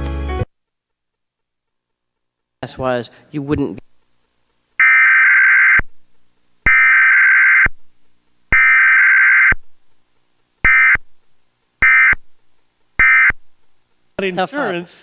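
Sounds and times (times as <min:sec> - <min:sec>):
digital data bursts: 0:04.8 - 0:06.0, 0:06.6 - 0:07.9, 0:08.5 - 0:09.8, 0:10.6 - 0:11.2, 0:11.8 - 0:12.4, 0:13.0 - 0:13.5.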